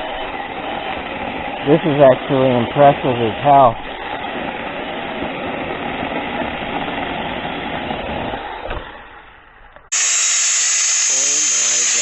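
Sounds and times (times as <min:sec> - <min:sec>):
high-pitched saw motor whine: 0:00.0 - 0:07.5, 0:09.9 - 0:12.0
chainsaw cutting wood: 0:00.0 - 0:12.0.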